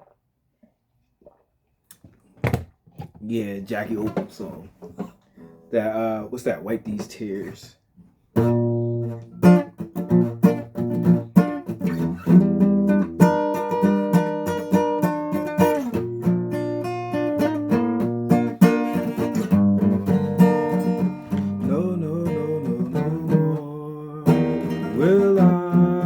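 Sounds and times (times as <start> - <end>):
guitar strumming chords: 8.4 - 26.0.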